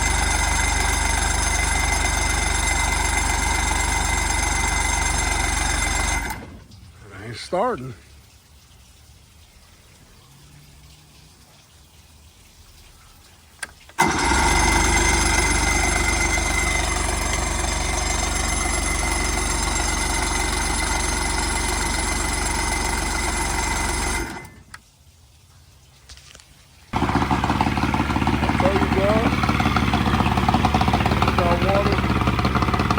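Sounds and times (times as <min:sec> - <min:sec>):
outboard motor running: 0:00.0 - 0:06.7, 0:14.0 - 0:24.8, 0:27.0 - 0:32.9.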